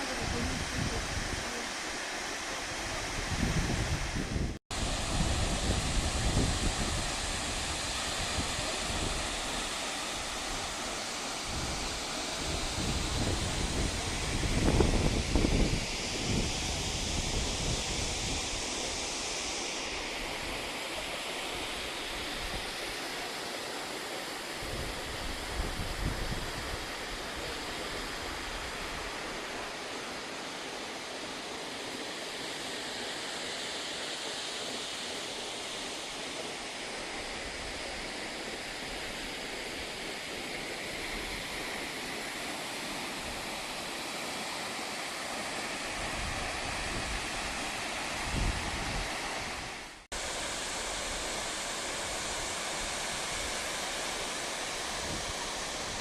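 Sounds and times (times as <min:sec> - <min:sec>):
wind rumble on microphone: 0:00.1 - 0:01.6, 0:02.9 - 0:09.2, 0:11.5 - 0:18.6, 0:24.6 - 0:26.8, 0:48.2 - 0:50.0
waterfall rushing: 0:04.7 - 0:56.0.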